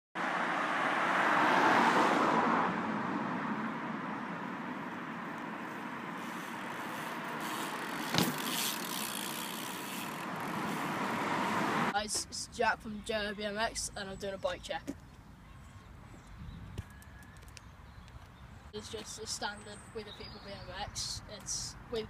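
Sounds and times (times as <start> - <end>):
road traffic noise: 0.2 - 22.0.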